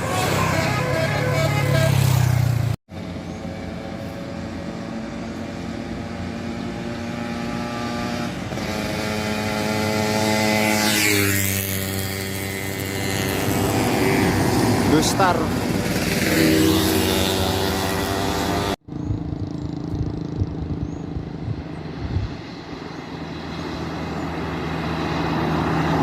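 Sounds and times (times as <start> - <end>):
musical bus horn: 0.0 - 2.6
steady engine hum: 0.0 - 26.0
vehicle passing: 0.0 - 26.0.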